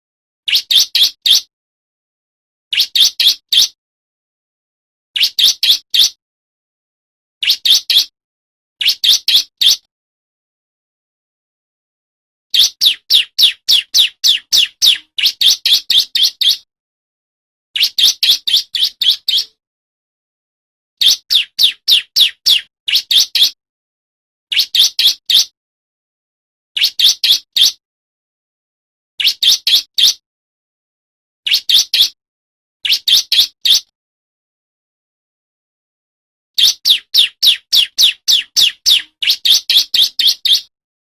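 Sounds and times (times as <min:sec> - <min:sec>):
bird singing sharp chirps: 0:12.5 - 0:16.7, 0:21.0 - 0:23.6, 0:36.6 - 0:40.7.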